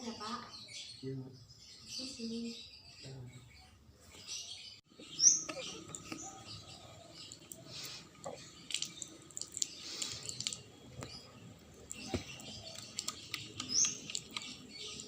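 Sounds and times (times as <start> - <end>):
hands rubbing together wet: 7.3 - 10.7, 11.8 - 15.0.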